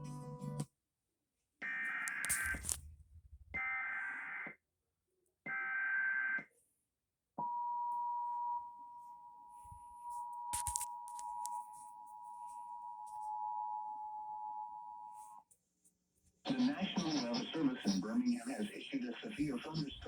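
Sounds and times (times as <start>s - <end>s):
digital header bursts: 2.1s - 2.8s, 16.5s - 20.0s.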